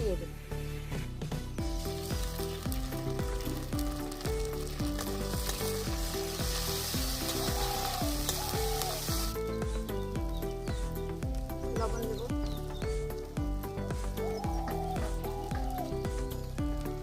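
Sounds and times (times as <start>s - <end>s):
background music: 0.0s - 17.0s
food sizzling in hot oil: 1.6s - 11.6s.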